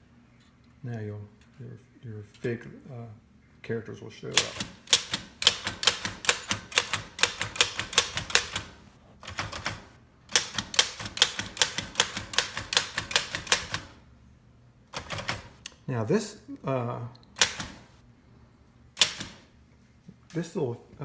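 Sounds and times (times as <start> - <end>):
typewriter keystroke clacks: 4.3 - 14.0, 15.0 - 15.6, 17.4 - 17.8, 19.0 - 19.5.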